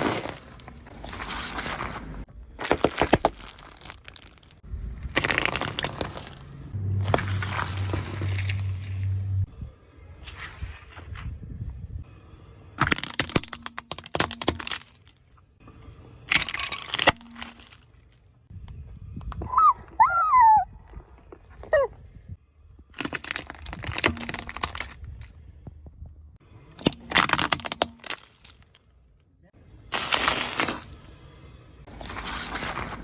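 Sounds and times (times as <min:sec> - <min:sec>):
objects crunching under tyre: 0:00.0 - 0:09.5, 0:12.8 - 0:15.5, 0:16.2 - 0:18.8, 0:22.7 - 0:25.8, 0:26.7 - 0:29.2, 0:29.8 - 0:33.0.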